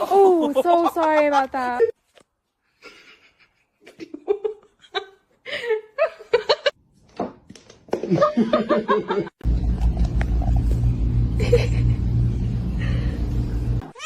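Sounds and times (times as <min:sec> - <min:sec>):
steady low rumble: 0:09.4 - 0:13.8
human laughter: 0:11.4 - 0:12.2.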